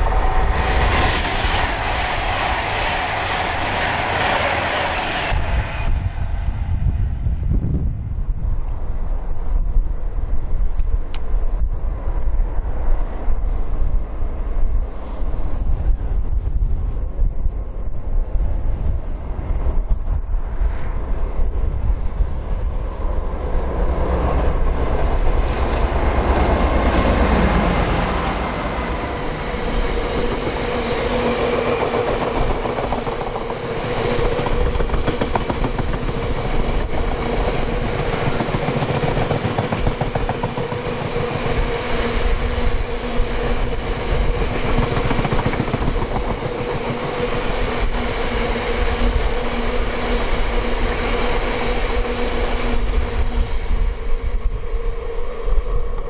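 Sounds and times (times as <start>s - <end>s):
wind buffeting microphone: 0.0s - 56.0s
train wheels clattering on rails: 23.7s - 53.0s.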